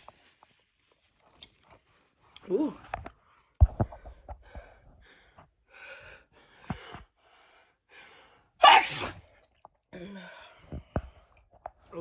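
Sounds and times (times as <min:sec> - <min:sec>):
woman sneezing: 0:08.6 - 0:09.2.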